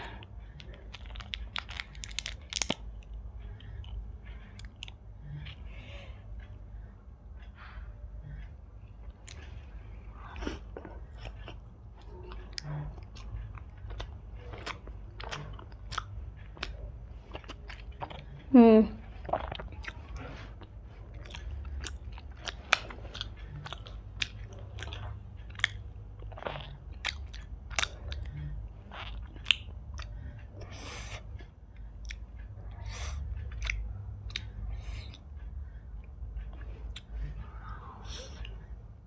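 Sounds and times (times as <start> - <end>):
close chewing and biting: 0.0 - 6.7, 8.3 - 38.8
low steady hum: 0.0 - 39.0
mouth clicks and smacks: 0.2 - 5.6, 19.2 - 35.3.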